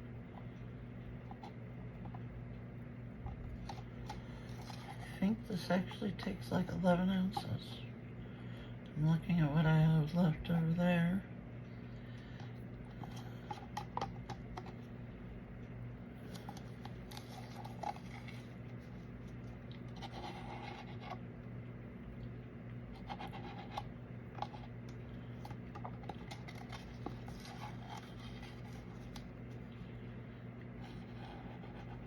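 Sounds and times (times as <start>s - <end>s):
low electrical hum: 0.0s - 32.0s
light scratching and scraping: 3.5s - 5.4s, 16.3s - 21.2s, 25.4s - 29.6s.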